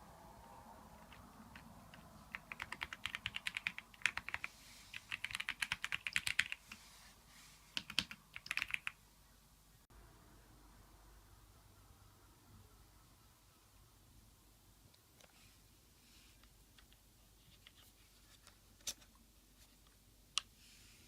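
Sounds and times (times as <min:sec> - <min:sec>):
mechanical keyboard typing: 0:01.0 - 0:06.7, 0:07.8 - 0:09.0.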